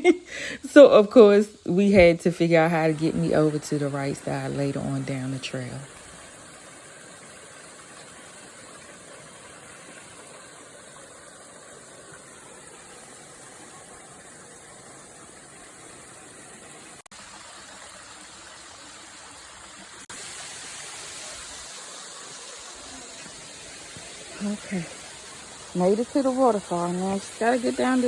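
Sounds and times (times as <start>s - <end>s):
stream water rushing: 1.9s - 28.0s.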